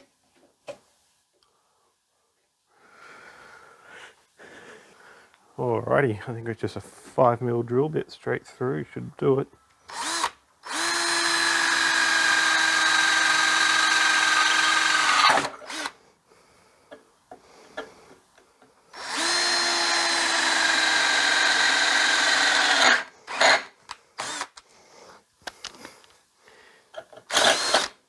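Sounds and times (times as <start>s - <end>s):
power drill drilling metal: 9.9s - 16.0s, 18.9s - 24.6s, 27.2s - 28.0s.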